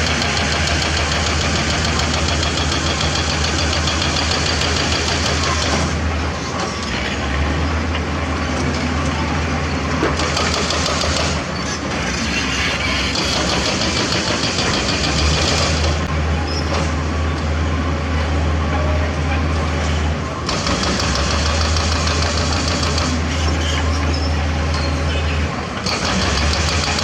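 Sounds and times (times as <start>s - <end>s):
diesel engine clattering: 0.0s - 17.5s, 18.6s - 27.0s.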